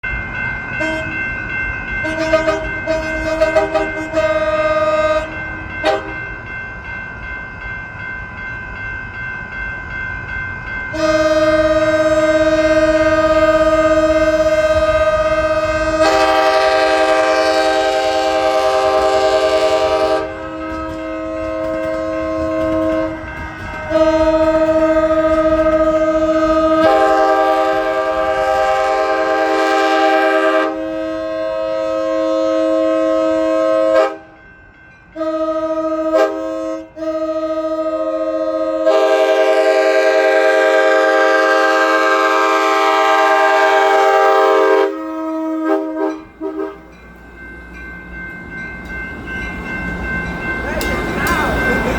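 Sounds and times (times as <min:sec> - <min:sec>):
low train rumble: 0:00.0 - 0:51.9
locomotive air horn blasts: 0:00.8 - 0:01.2, 0:02.0 - 0:06.2, 0:10.9 - 0:34.3, 0:35.2 - 0:46.9.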